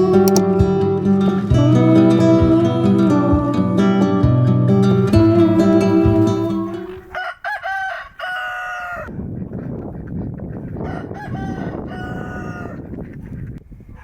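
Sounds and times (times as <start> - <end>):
guitar music: 0.0 - 7.0
background noise: 0.0 - 14.0
rooster crowing: 7.0 - 9.1, 10.8 - 12.8.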